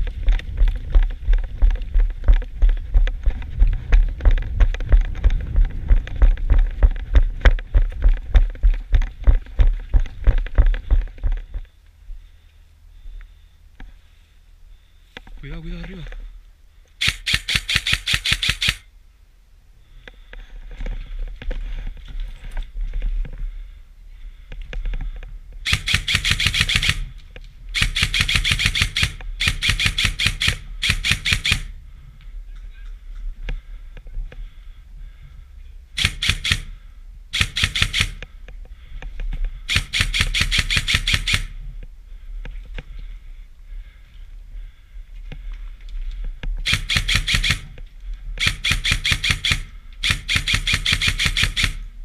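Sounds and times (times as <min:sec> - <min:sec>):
quiet rustle: 0:00.0 - 0:26.2, 0:27.0 - 0:28.0, 0:31.7 - 0:36.0, 0:41.4 - 0:46.7, 0:47.6 - 0:48.4
airsoft guns firing bursts: 0:17.0 - 0:18.8, 0:25.6 - 0:27.1, 0:27.8 - 0:31.7, 0:36.0 - 0:38.2, 0:39.7 - 0:41.6, 0:46.6 - 0:47.8, 0:48.4 - 0:51.9.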